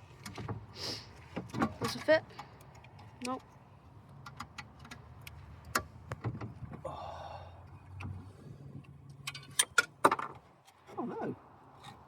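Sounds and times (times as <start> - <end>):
car parts clicking and knocking: 0.0 - 6.8, 8.8 - 10.9.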